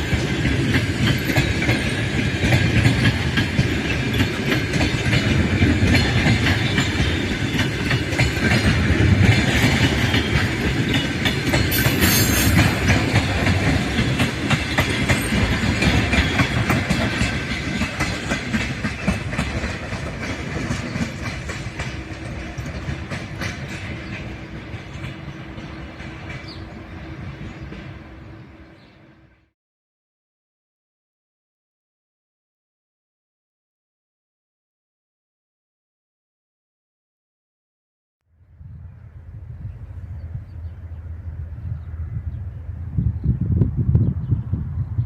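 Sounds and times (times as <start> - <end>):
train wheels clicking over rail joints: 0.0 - 28.8
train rumble: 0.0 - 29.5, 38.4 - 45.0.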